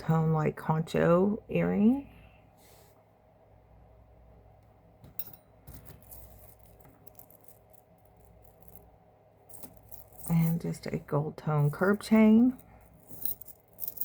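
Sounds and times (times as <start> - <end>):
metal jewelry clinking: 5.0 - 14.0.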